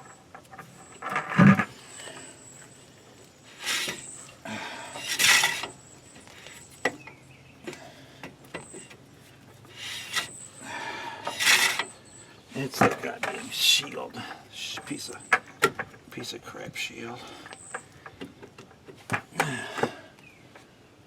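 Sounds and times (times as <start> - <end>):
metal scraping and rubbing: 3.6 - 4.2, 4.9 - 5.8, 9.8 - 10.4, 11.2 - 12.0.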